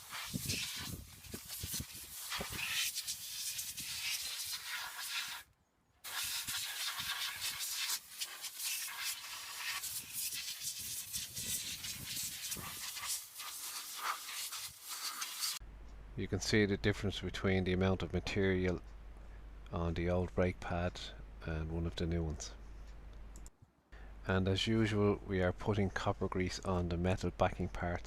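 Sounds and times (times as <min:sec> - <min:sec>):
compressed air hissing: 0:00.0 - 0:05.4, 0:06.1 - 0:15.6.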